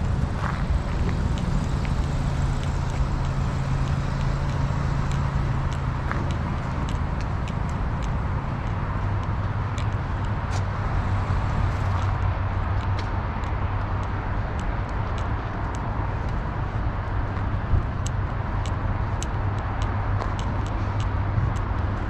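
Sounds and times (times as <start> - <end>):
faint ticks: 0.0 - 10.7, 17.3 - 22.0
road noise: 0.0 - 22.0
vehicle engine running: 0.0 - 22.0.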